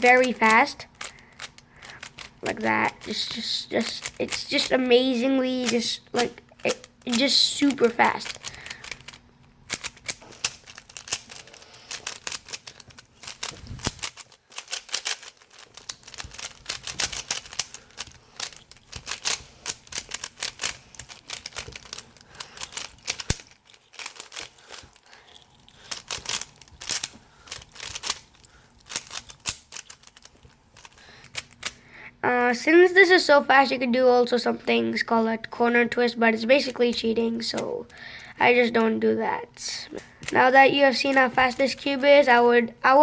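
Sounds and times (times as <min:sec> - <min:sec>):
puzzle cube layers clicking: 0:00.0 - 0:31.8, 0:39.8 - 0:42.0.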